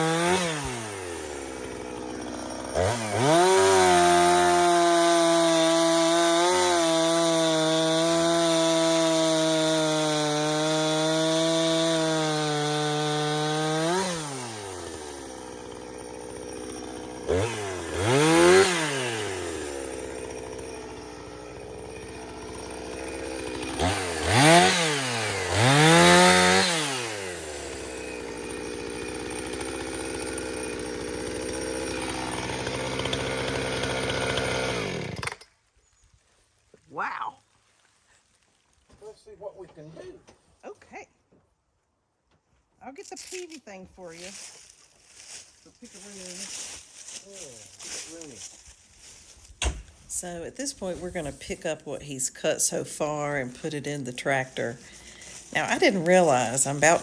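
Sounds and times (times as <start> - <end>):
chainsaw cutting and idling: 0.0 - 35.6, 43.1 - 57.0.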